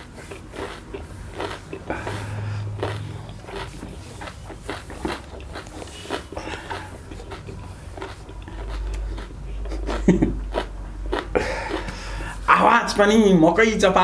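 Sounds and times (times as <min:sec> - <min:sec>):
person chewing with wet crunching: 0:00.0 - 0:12.6.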